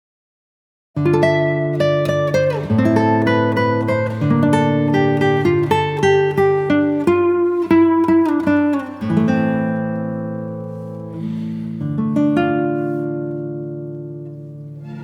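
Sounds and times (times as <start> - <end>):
acoustic guitar music: 1.0 - 15.0.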